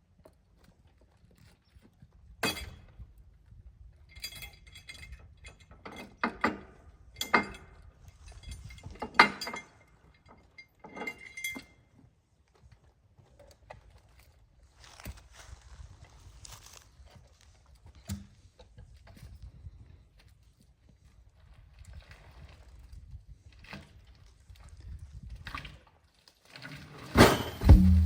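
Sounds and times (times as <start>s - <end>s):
logs knocking when unloaded: 27.2s - 28.0s.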